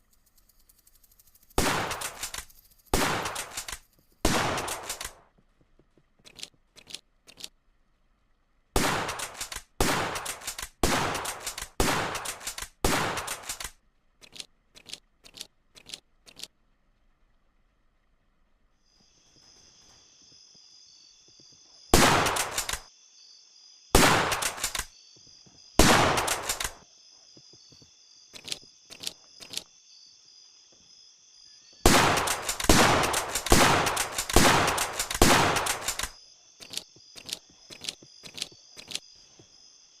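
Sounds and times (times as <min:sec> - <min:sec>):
rifle shots: 0:01.6 - 0:02.4, 0:03.0 - 0:05.2, 0:08.8 - 0:13.7, 0:22.0 - 0:22.9, 0:24.0 - 0:24.9, 0:25.8 - 0:26.8, 0:31.9 - 0:36.2
light clicks: 0:09.1 - 0:16.6, 0:28.3 - 0:29.7, 0:32.3 - 0:39.1.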